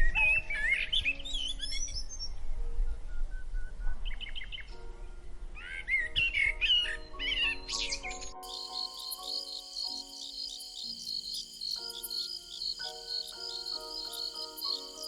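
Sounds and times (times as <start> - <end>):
soft background music: 0.0 - 15.0
songbird warbling: 8.4 - 15.0.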